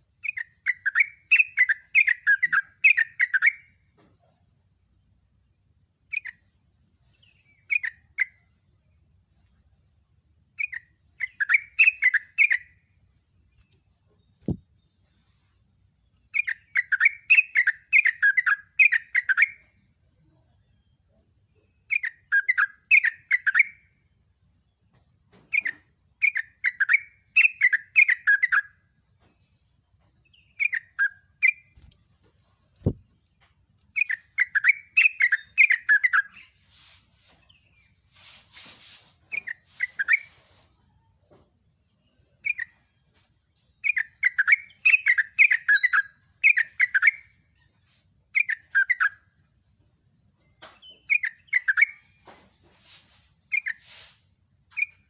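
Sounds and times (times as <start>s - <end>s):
bird chattering song: 0.0s - 3.7s, 10.6s - 12.8s, 16.3s - 19.7s, 21.8s - 23.8s, 25.5s - 28.8s, 30.3s - 32.0s, 32.8s - 33.0s, 34.0s - 36.6s, 43.8s - 47.7s, 48.4s - 49.2s, 50.6s - 52.2s.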